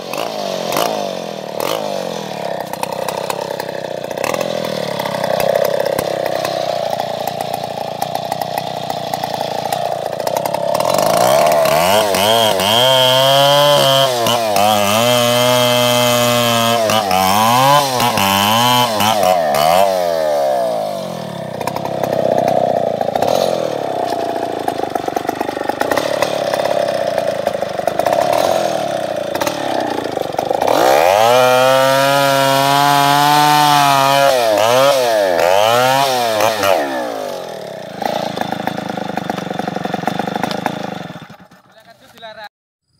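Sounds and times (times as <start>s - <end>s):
chainsaw cutting tree: 0.0s - 42.4s.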